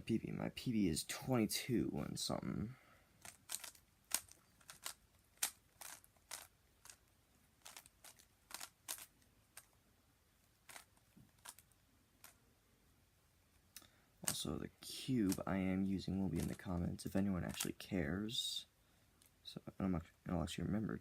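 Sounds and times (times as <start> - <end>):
speed cube layers clicking: 3.2 - 9.8, 10.6 - 12.4, 15.2 - 15.5, 16.3 - 16.8, 17.5 - 17.8.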